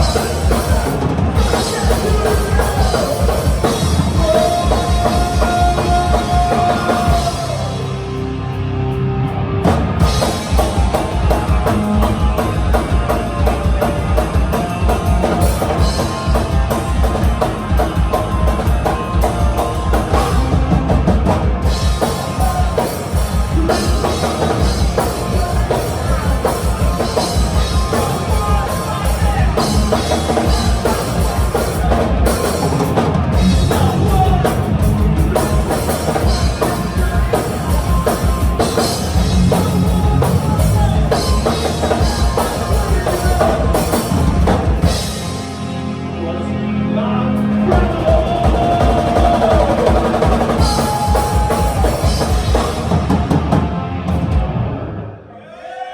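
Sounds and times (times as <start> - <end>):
shouted vocals: 0.0 - 8.2, 22.1 - 44.5, 47.0 - 53.4, 55.2 - 55.9
punk rock band playing: 0.0 - 55.3.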